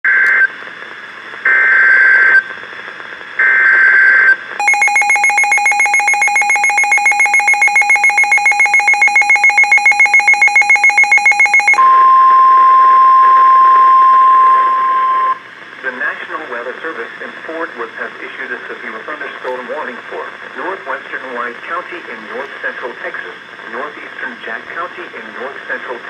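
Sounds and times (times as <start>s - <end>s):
screechy digital data bursts: 4.6s - 11.8s
buzzy pulsing alarm beep: 4.6s - 15.4s
steady warning tone: 4.6s - 15.4s
radio hiss: 15.4s - 26.0s.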